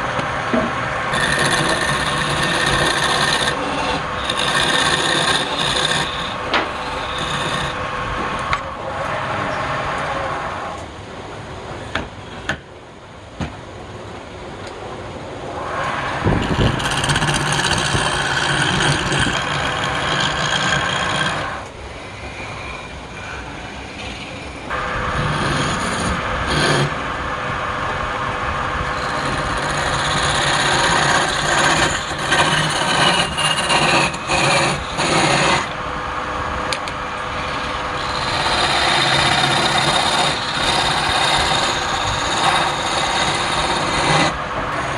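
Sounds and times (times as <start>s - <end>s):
tool scraping spinning wood: 0.6s - 8.6s, 15.6s - 27.1s, 28.9s - 35.8s, 36.6s - 44.9s
wood lathe running: 1.0s - 7.9s, 15.9s - 22.8s, 24.0s - 27.1s, 28.9s - 35.8s, 36.8s - 44.9s.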